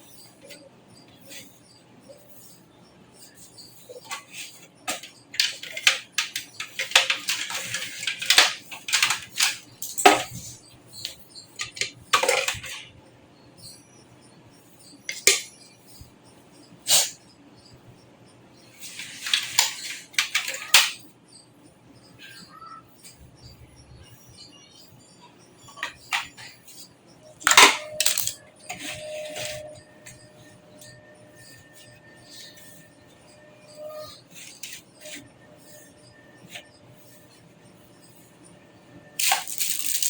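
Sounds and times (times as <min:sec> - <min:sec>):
computer parts clicking and rattling: 0:03.2 - 0:13.0, 0:14.8 - 0:16.0, 0:18.7 - 0:21.1, 0:22.0 - 0:40.0.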